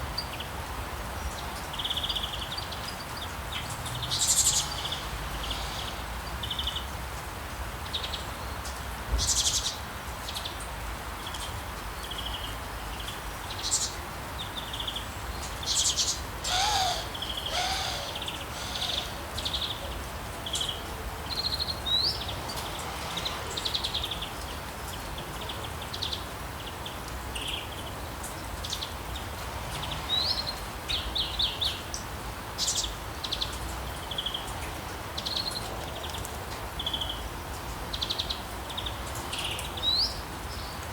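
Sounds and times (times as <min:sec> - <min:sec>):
rain hiss: 0:00.1 - 0:40.9
songbirds chirping and singing: 0:15.7 - 0:20.0.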